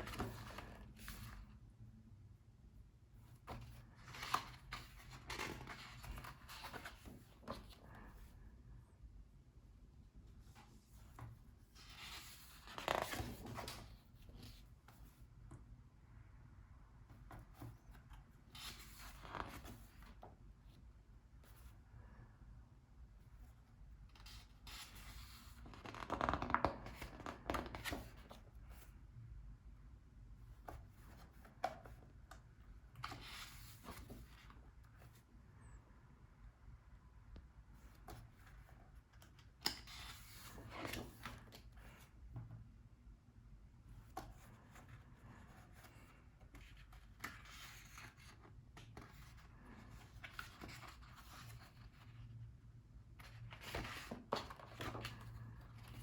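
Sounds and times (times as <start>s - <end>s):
book pages turning: 0.0s - 1.7s, 3.2s - 8.2s, 10.4s - 15.2s, 17.1s - 20.3s, 24.1s - 28.9s, 30.5s - 35.2s, 37.7s - 42.4s, 44.0s - 52.4s, 53.2s - 56.0s.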